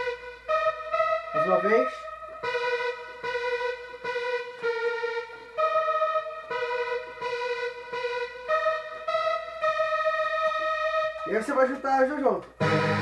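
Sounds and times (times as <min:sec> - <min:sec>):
synth lead riff: 0:00.0 - 0:11.3, 0:12.6 - 0:13.0.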